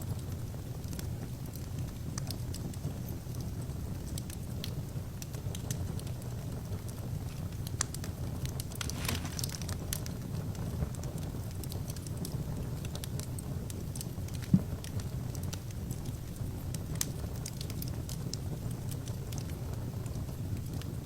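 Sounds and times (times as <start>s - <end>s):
fire crackling and popping: 0.0s - 21.0s
fire flames rumbling: 0.0s - 21.0s.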